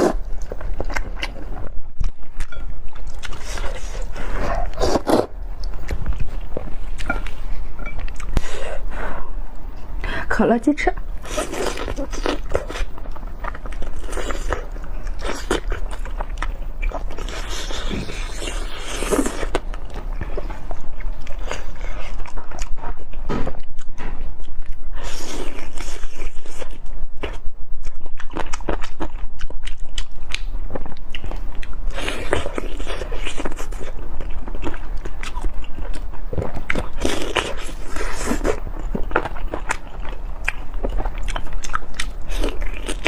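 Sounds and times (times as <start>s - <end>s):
chewing chicken wings: 27.8s - 43.0s.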